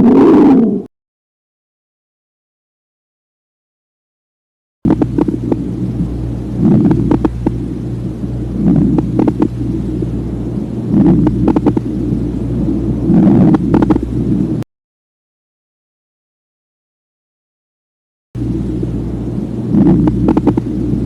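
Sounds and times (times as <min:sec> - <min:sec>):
steady low hum: 0:04.8 - 0:14.6, 0:18.4 - 0:21.0.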